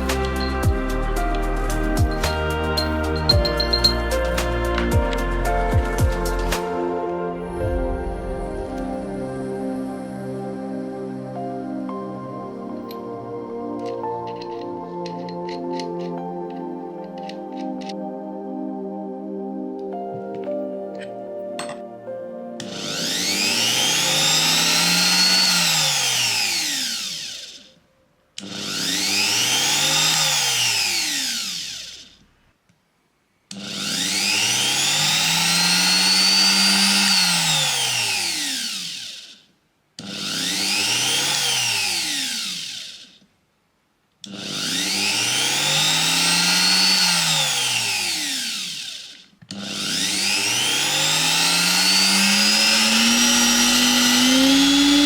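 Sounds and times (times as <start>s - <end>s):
trim router motor whining: 0.0s - 6.7s, 22.6s - 27.7s, 28.4s - 32.3s, 33.5s - 39.4s, 40.0s - 43.2s, 44.2s - 55.0s.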